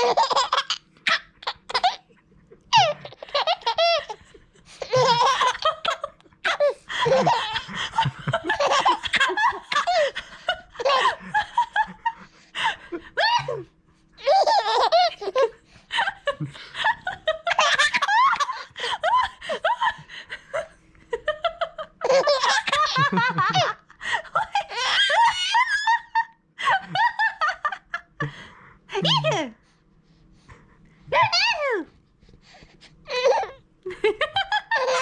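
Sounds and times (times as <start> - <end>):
baby laughing: 0.0 - 2.1, 2.7 - 11.9, 14.2 - 15.5, 16.8 - 20.0, 22.0 - 23.8, 24.4 - 26.1, 33.1 - 33.6, 34.4 - 35.0.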